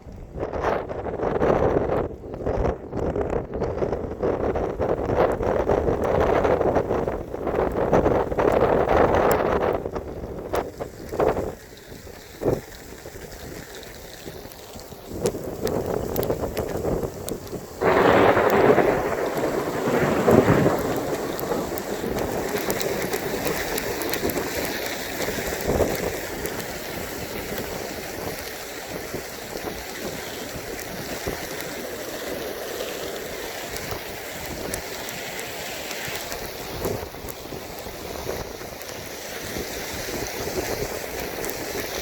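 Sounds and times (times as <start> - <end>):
steady rain: 2.0 - 42.0
thunder crack rolling: 15.2 - 35.0.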